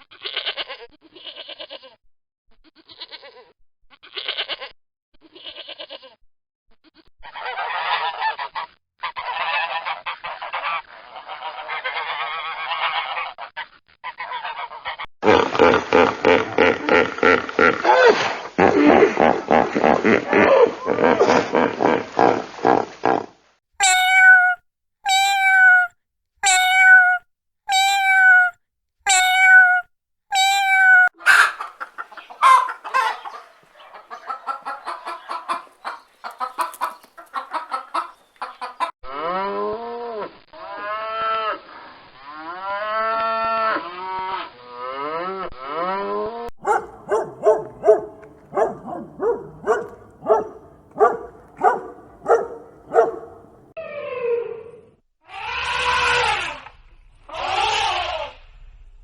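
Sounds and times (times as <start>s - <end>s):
farm animals calling: 23.8s - 28.5s, 29.1s - 38.9s, 46.6s - 53.7s.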